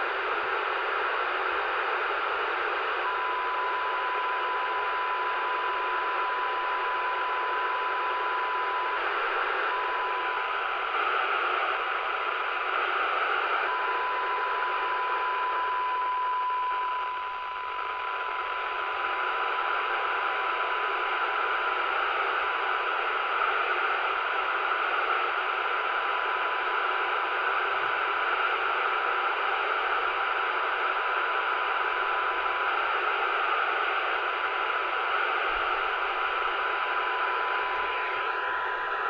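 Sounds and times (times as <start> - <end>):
radio receiver hiss: 0.0 - 39.0
steady single-pitch tone: 13.6 - 19.0.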